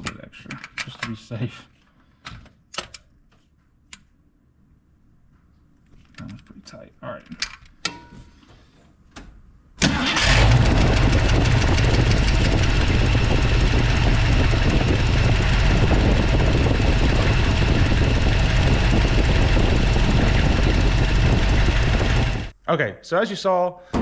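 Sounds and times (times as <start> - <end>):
car engine starting and idling: 9.8 - 22.5.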